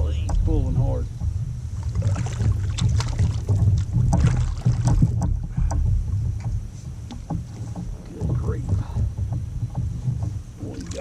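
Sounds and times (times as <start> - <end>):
knocks on kayak: 0.0 - 11.0
water lapping against kayak hull: 0.0 - 11.0
wind rumble on microphone: 0.0 - 11.0.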